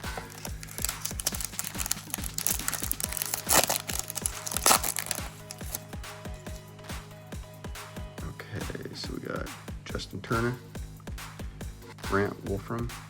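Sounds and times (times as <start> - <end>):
foil wrapper crinkling: 0.0 - 5.8
background music with steady beat: 0.0 - 13.0.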